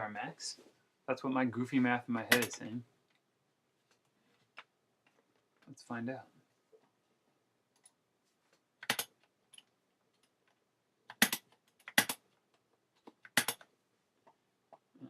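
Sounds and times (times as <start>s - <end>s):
sharp clicks: 2.3s - 2.6s, 8.8s - 9.1s, 11.1s - 12.2s, 13.2s - 13.7s.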